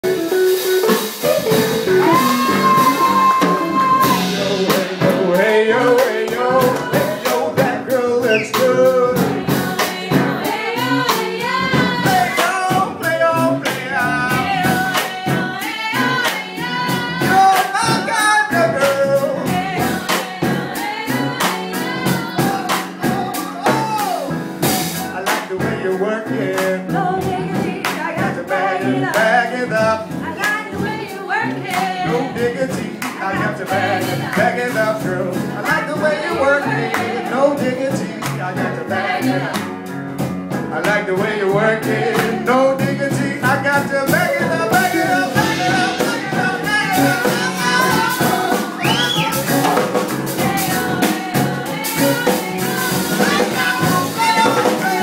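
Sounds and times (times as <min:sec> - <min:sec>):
steady beat: 0:00.0 - 0:26.0, 0:26.6 - 0:55.0
person singing: 0:01.4 - 0:24.4, 0:40.7 - 0:49.8, 0:50.4 - 0:55.0.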